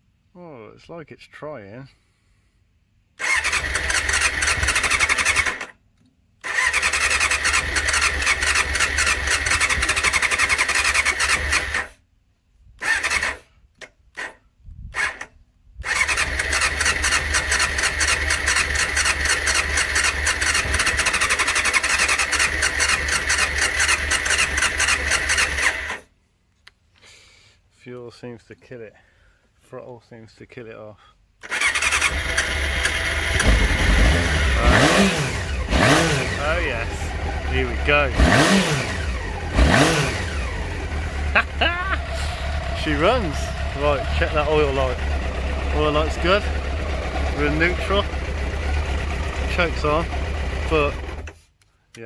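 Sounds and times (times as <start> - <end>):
electric starter cranking engine: 3.2 - 5.7, 6.4 - 12.0, 12.8 - 13.4, 15.0 - 26.1, 31.4 - 51.4.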